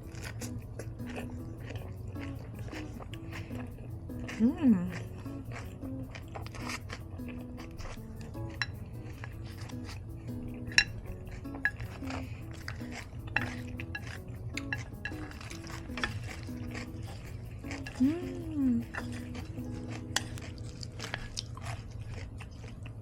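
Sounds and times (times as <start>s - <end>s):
soft background music: 0.0s - 23.0s
utensils clinking on a dish: 10.6s - 18.0s.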